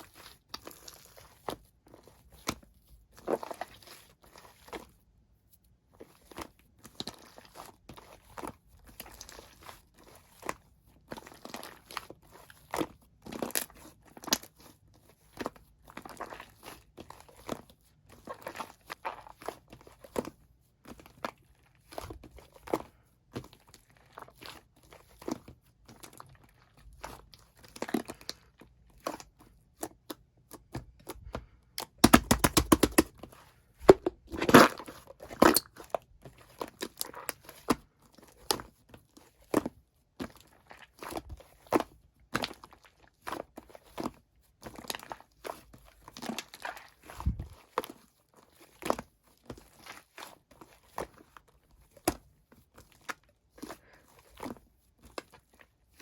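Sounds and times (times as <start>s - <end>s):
slime popping and crackling: 31.8s - 33.1s.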